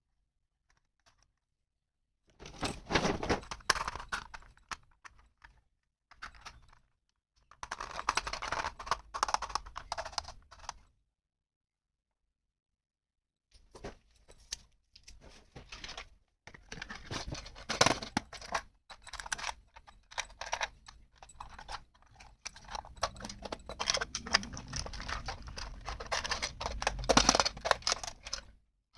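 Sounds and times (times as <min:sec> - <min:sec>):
plastic toy pieces clicking: 0:07.6 - 0:10.7, 0:17.5 - 0:28.5.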